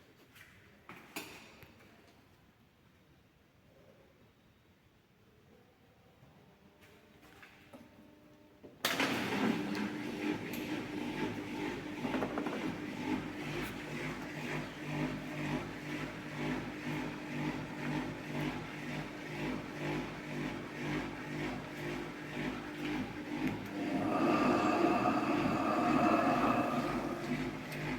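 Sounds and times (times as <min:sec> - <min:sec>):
washing machine drum spinning: 0:19.4 - 0:27.9.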